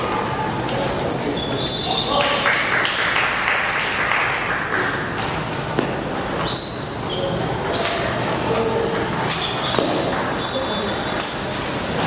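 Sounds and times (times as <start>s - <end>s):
background chatter: 0.0s - 2.6s, 4.9s - 12.0s
shoe squeaks: 1.0s - 2.2s, 4.5s - 7.5s, 9.2s - 12.0s.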